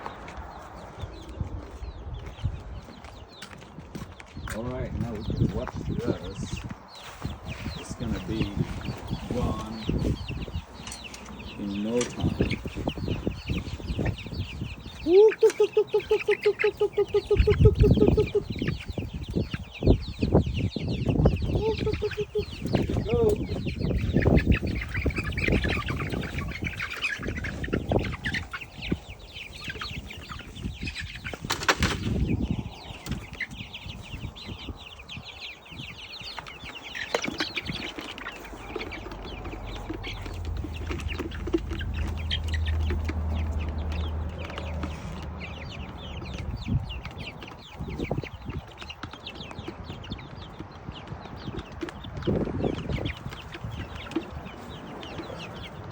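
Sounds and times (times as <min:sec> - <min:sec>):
chickens clucking: 0:00.0 - 0:55.9.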